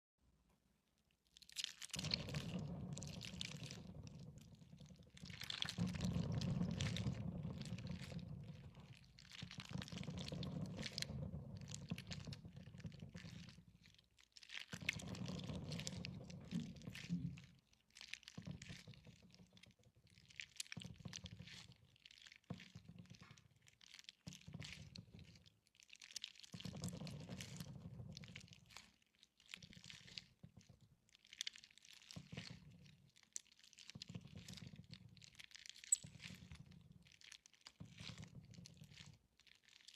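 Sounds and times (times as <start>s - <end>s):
slime squeezed by hand: 1.3s - 27.6s, 31.1s - 39.9s
air bubbles popping in slime: 1.5s - 13.7s.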